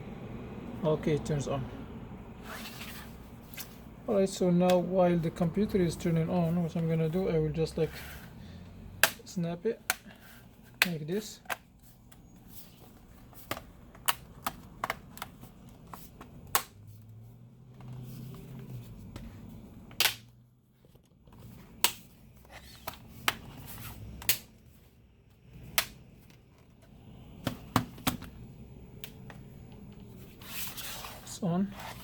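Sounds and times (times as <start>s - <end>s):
plastic clips snapping shut: 9.0s - 10.1s, 19.9s - 20.3s.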